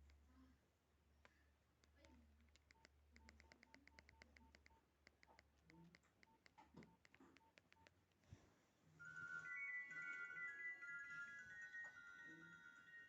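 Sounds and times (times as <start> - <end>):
phone keypad clicks and beeps: 1.8 - 8.0
phone ringtone melody: 9.0 - 13.0.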